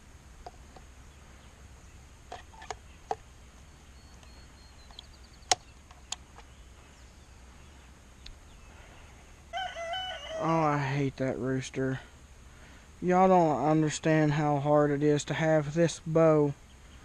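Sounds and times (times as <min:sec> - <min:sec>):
faint high chirp: 0:02.9 - 0:05.8.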